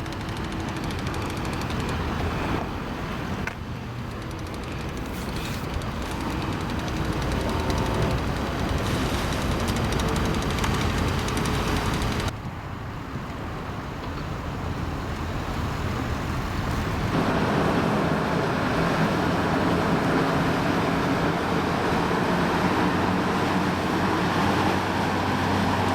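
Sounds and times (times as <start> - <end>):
motorboat engine running: 0.0 - 12.3
wind: 0.0 - 25.9
rush of boat wash: 5.1 - 12.6, 14.4 - 25.9.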